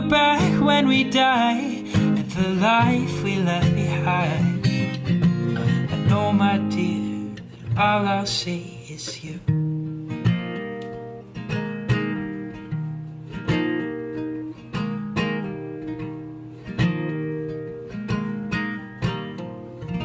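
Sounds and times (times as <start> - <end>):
acoustic guitar chords: 0.0 - 20.0.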